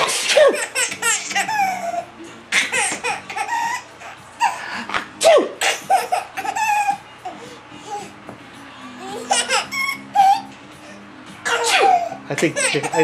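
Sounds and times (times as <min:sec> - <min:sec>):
child sneezing: 0:00.0 - 0:00.6, 0:05.2 - 0:05.8, 0:11.5 - 0:12.0
young child laughing: 0:11.5 - 0:13.0.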